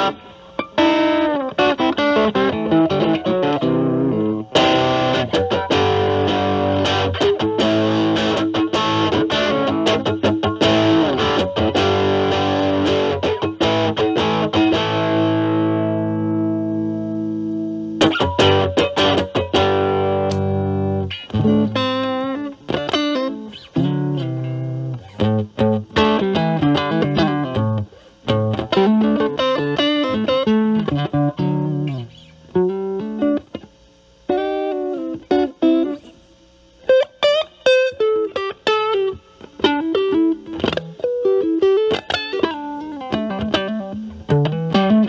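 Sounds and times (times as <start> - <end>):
distorted electric guitar: 0.0 - 45.0.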